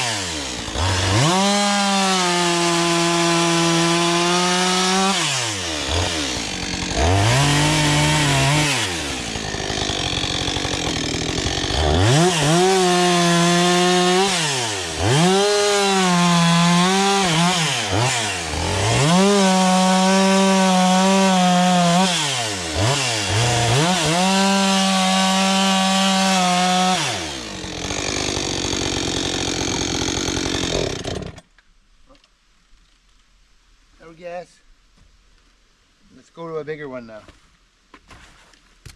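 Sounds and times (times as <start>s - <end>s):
chainsaw cutting firewood: 0.0s - 31.6s.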